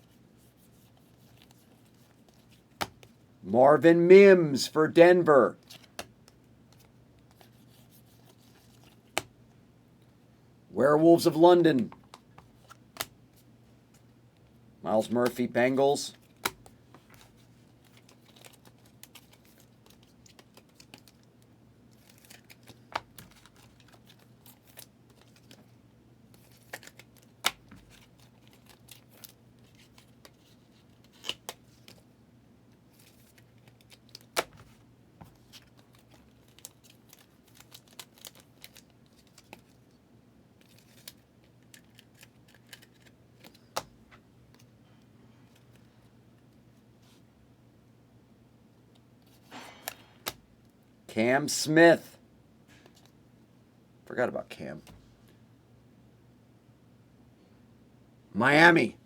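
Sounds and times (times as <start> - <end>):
card sleeves clicking and rustling: 5.6 - 9.3, 16.1 - 32.1, 32.9 - 39.9, 40.6 - 44.7.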